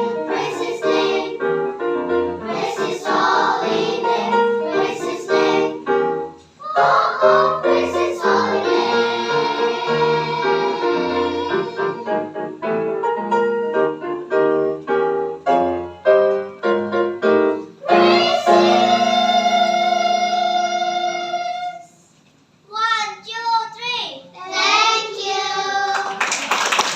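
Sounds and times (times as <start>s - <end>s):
children's choir singing a hymn: 0.0s - 12.6s, 17.8s - 22.0s, 24.4s - 26.4s
piano accompaniment: 0.0s - 21.9s.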